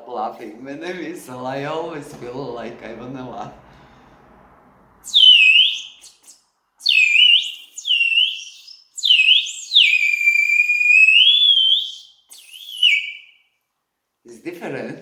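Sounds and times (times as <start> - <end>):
water whistle bird-like calls: 5.0 - 13.4.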